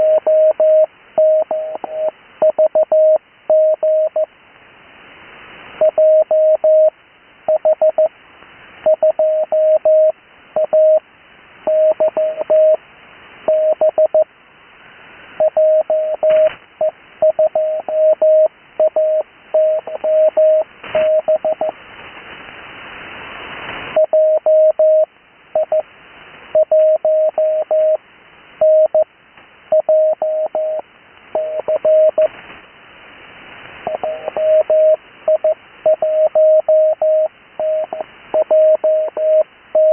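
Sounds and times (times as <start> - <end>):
radio static hiss: 0.0 - 39.9
morse code tone: 15.4 - 21.7, 31.4 - 32.3, 33.9 - 39.9.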